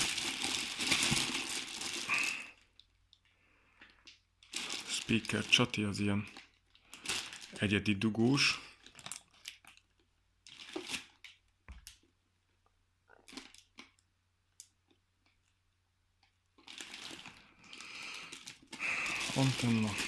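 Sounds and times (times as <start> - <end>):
packaging crinkling: 0.0 - 2.7, 4.4 - 11.4, 16.6 - 20.0.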